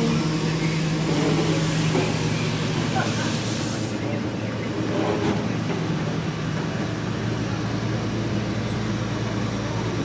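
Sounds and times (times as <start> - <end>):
large engine idling: 0.0 - 10.0
outdoor noise: 0.0 - 10.0.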